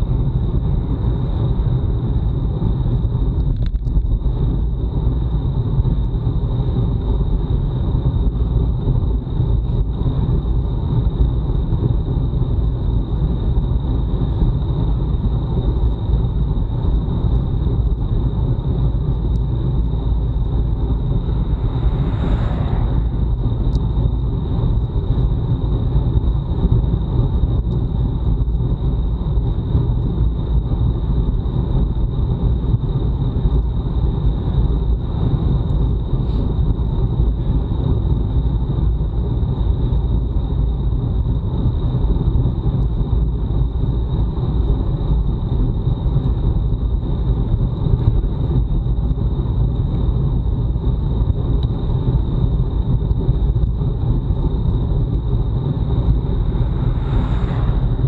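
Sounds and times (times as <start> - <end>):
wind buffeting microphone: 0.0 - 31.6, 52.8 - 58.0.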